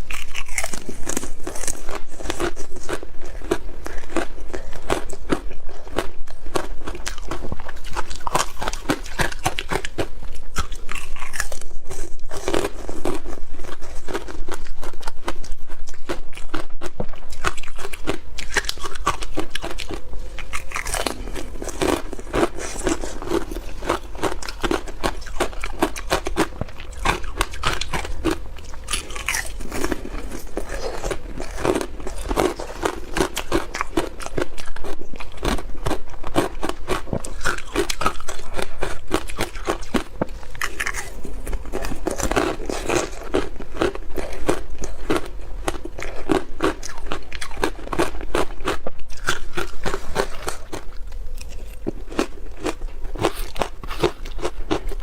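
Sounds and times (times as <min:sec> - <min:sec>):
person crunching ice: 0:17.5 - 0:54.9.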